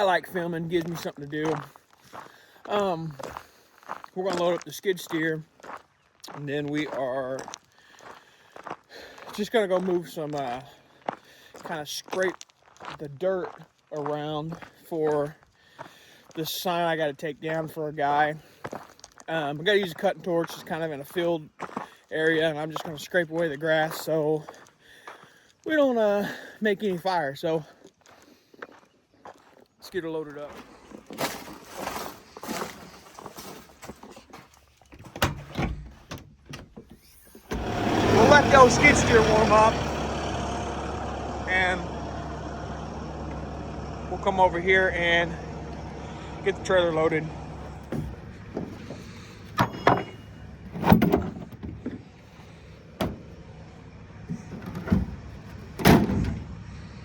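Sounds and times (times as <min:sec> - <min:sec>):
footsteps: 0:00.0 - 0:16.5, 0:27.6 - 0:36.2, 0:36.8 - 0:55.8
knocks and clunks: 0:34.9 - 0:44.1, 0:45.4 - 0:56.6
skid steer engine idling: 0:37.5 - 0:57.0
sharp metal knocks and clanks: 0:47.9 - 0:52.0.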